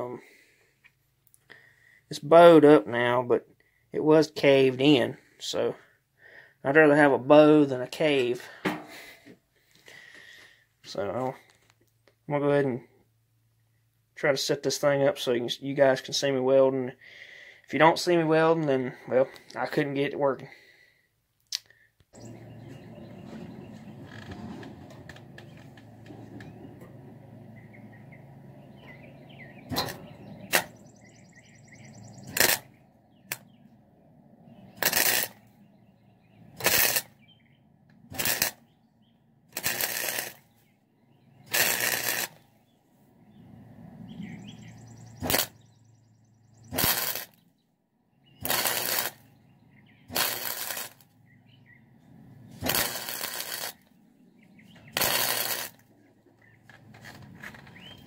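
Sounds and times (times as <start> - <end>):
welding arc bursts: 32.2 - 33.4, 34.8 - 35.4, 36.6 - 37.2, 38.1 - 38.6, 39.5 - 40.4, 41.5 - 42.4, 45.2 - 45.7, 46.7 - 47.4, 48.4 - 49.3, 50.1 - 51.1, 52.6 - 53.9, 54.9 - 55.9.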